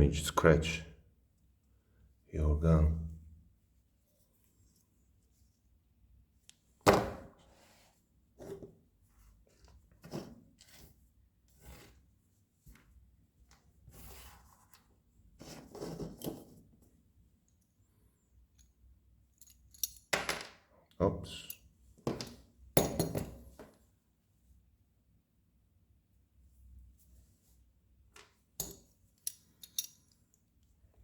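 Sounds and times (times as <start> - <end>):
small metal parts clicking: 19.4 - 20.1, 28.6 - 30.2.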